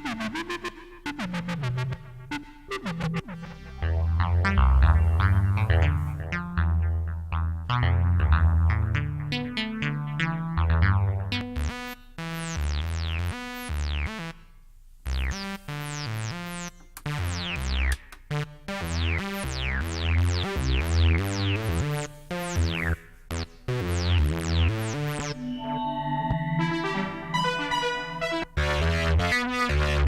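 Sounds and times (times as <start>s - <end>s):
synthesizer note sequence: 2.7s - 7.2s, 20.5s - 29.4s
synth bass line: 2.7s - 11.8s, 19.6s - 29.4s.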